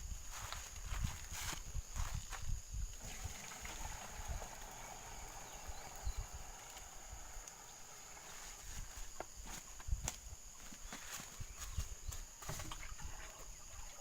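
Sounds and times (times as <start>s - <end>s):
liquid trickling: 3.0s - 9.0s.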